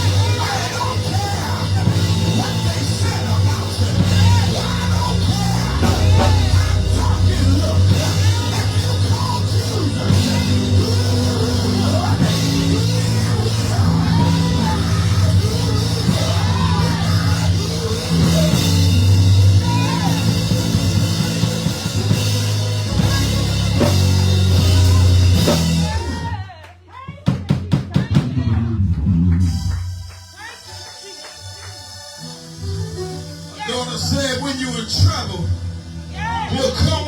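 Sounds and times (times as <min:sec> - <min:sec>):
bass notes: 0:00.0 - 0:26.4, 0:28.0 - 0:30.2, 0:33.0 - 0:37.0
live church band music: 0:00.0 - 0:26.5, 0:27.5 - 0:37.0
voices singing and calling out: 0:00.0 - 0:26.7
drums: 0:00.0 - 0:37.0.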